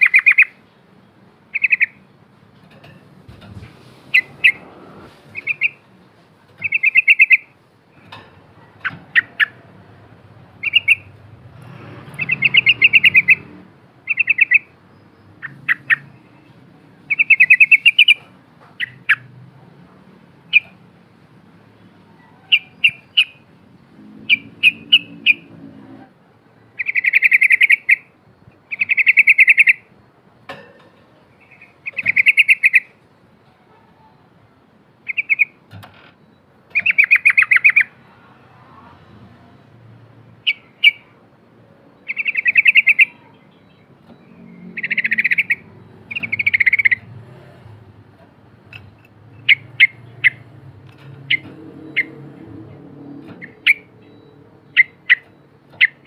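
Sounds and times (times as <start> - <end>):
bird chirps: 0.0 - 0.8, 1.5 - 2.1, 4.1 - 4.7, 5.3 - 5.9, 6.6 - 9.9, 10.6 - 11.3, 12.1 - 19.3, 20.5 - 20.8, 21.8 - 25.6, 26.8 - 30.0, 31.3 - 33.0, 35.0 - 35.6, 36.2 - 41.2, 41.8 - 47.8, 48.7 - 56.0
bulbul singing trilled phrases: 6.6 - 7.5, 10.6 - 11.2, 14.1 - 14.7, 42.0 - 47.1.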